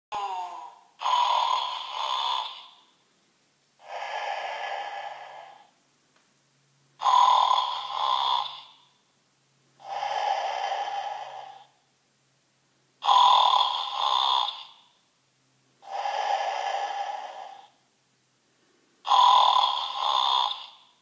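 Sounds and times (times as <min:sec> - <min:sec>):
toy speaker snoring: 0:00.1 - 0:02.9, 0:03.8 - 0:05.7, 0:07.0 - 0:08.9, 0:09.8 - 0:11.8, 0:13.0 - 0:14.9, 0:15.8 - 0:17.8, 0:19.0 - 0:21.0.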